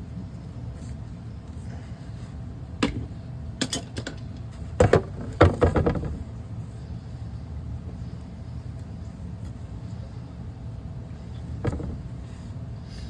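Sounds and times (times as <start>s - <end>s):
steady low hum: 0.0s - 13.0s
plumbing pipes knocking and clattering: 2.8s - 6.3s, 11.6s - 12.1s.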